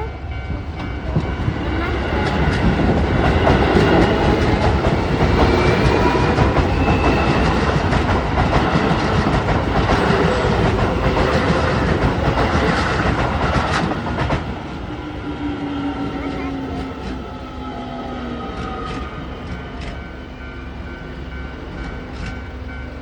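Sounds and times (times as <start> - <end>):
electric train rumbling past: 0.0 - 23.0
wheels clacking over rail joints: 0.3 - 14.6.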